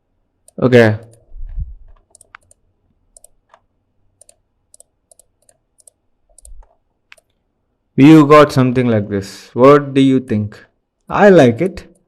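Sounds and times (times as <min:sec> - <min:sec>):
computer mouse clicking: 0:00.4 - 0:07.4.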